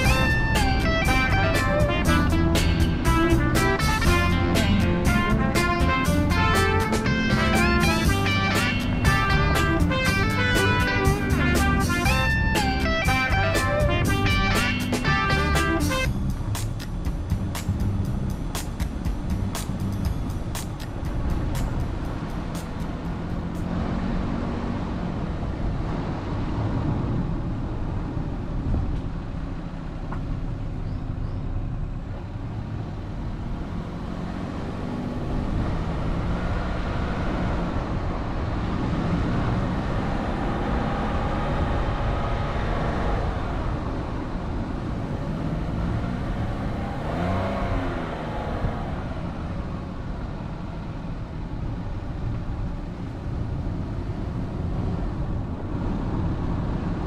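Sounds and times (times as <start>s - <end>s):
road noise: 0.0s - 57.0s
vehicle engine rumble: 0.0s - 57.0s.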